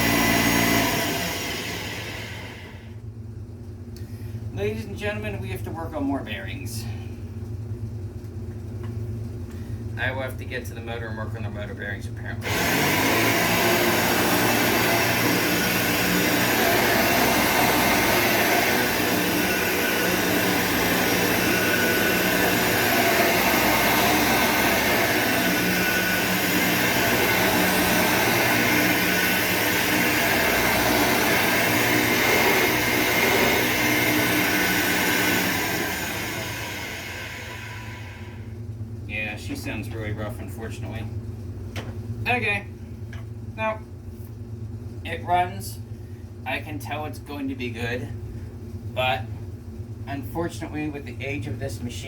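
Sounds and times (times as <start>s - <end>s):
vacuum cleaner high whine: 0.0s - 2.9s, 12.4s - 38.5s.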